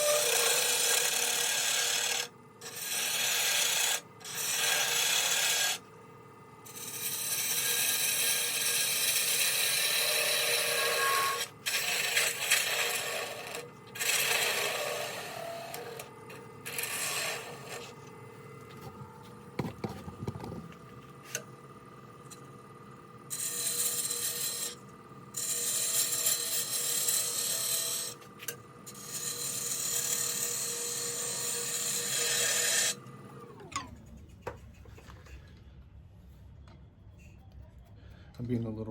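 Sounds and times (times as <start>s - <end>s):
gouge scraping wood on lathe: 0.0s - 5.9s, 6.7s - 18.1s, 23.3s - 33.0s.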